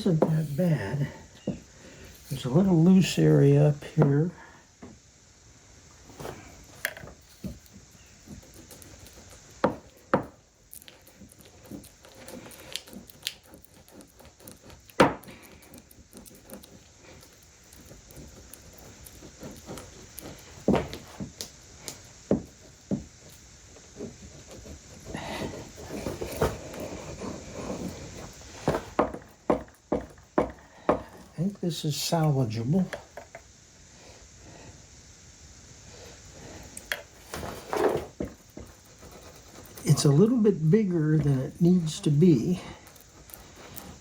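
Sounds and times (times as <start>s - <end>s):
rubbing: 10.8s - 21.4s, 23.8s - 31.4s, 37.2s - 44.0s
tools knocking on workbench: 28.7s - 31.2s.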